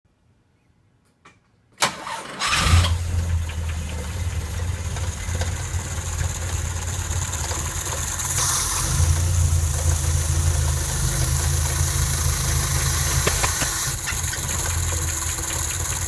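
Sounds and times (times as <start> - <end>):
car engine revving and idling: 2.5 - 16.0
starter cranking: 11.4 - 16.0.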